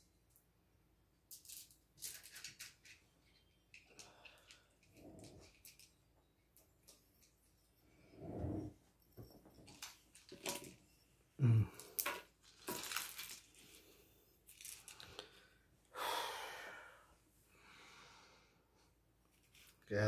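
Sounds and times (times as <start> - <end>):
crystals clicking and knocking: 1.3 - 13.8, 14.5 - 15.3.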